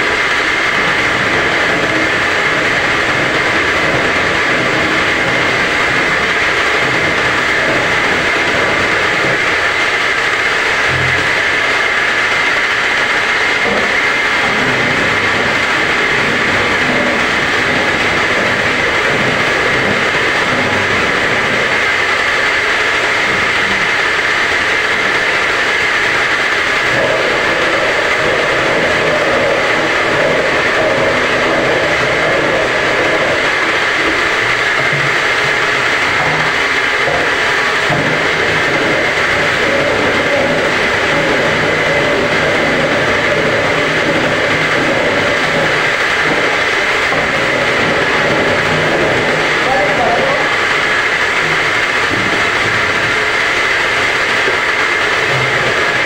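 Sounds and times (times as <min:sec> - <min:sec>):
washing machine motor whining: 0:00.0 - 0:56.0.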